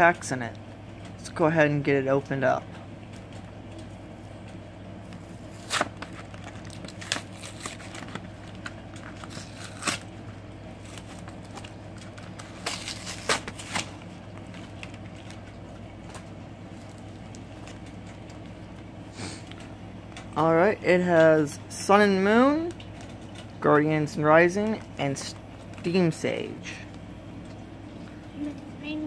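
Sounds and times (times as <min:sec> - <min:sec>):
steady low hum: 0:00.0 - 0:29.0
packaging tearing and crackling: 0:05.5 - 0:10.1, 0:10.8 - 0:18.5.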